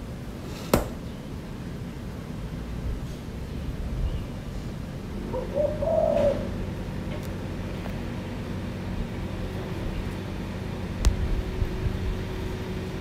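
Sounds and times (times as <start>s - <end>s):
low background hum: 0.0s - 13.0s
dove cooing: 5.2s - 7.0s.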